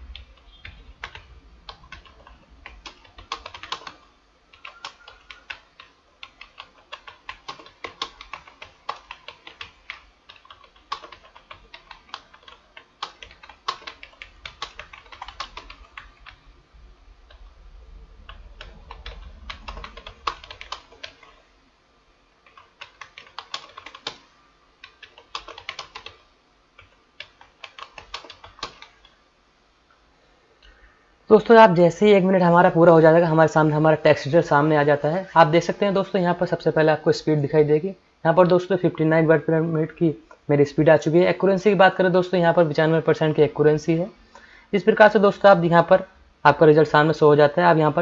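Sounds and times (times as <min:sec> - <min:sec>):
fast typing on computer keyboard: 0:00.1 - 0:16.4, 0:18.2 - 0:21.4, 0:22.4 - 0:26.2, 0:26.8 - 0:29.2.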